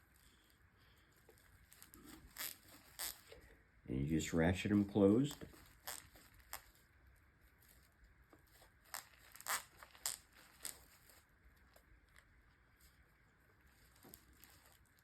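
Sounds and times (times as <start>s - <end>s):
plastic bag crinkling: 0.0s - 3.5s, 4.6s - 15.0s
cable tie ratcheting: 1.7s - 3.5s, 8.9s - 11.2s.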